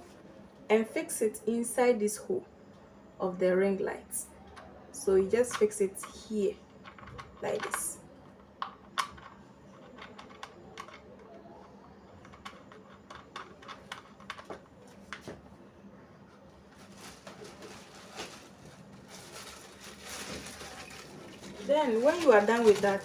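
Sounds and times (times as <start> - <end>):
small parts clicking and tapping: 6.8 - 15.2.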